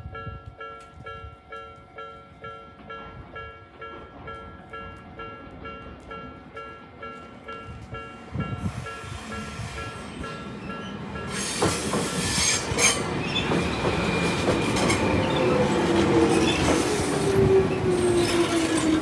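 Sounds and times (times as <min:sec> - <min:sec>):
crossing warning bell: 0:00.0 - 0:19.0
train wheel and running noise: 0:07.0 - 0:19.0.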